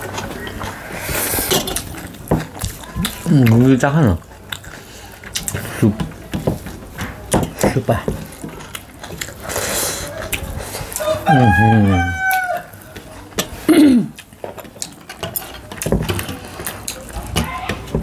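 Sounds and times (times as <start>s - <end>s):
eating and dish clicks: 1.4s - 11.6s, 12.2s - 18.0s
rooster crowing: 11.0s - 12.8s.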